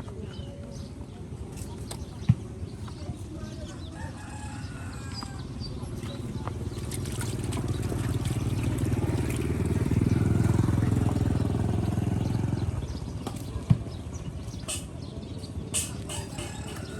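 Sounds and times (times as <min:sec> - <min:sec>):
small petrol engine running: 0:06.6 - 0:13.2.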